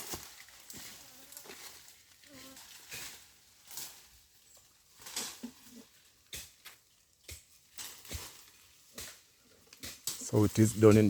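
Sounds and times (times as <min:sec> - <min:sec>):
brush rustling: 0:00.0 - 0:11.0.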